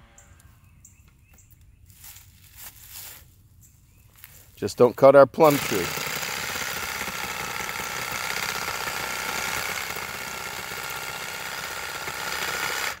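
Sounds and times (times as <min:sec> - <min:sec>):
power saw cutting branches: 0:04.7 - 0:13.0.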